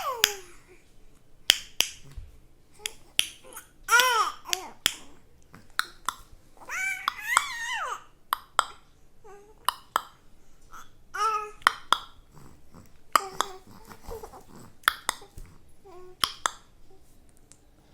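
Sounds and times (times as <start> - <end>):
baby babbling: 0.0 - 0.8, 2.8 - 6.0, 6.6 - 8.1, 9.2 - 9.7, 10.7 - 11.8, 12.4 - 17.0.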